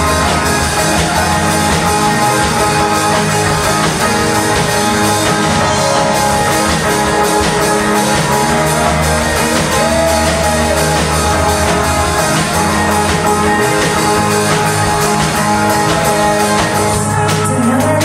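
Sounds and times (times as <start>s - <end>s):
bass: 0.0s - 18.0s
drum kit: 0.0s - 18.0s
guitar: 0.0s - 18.0s.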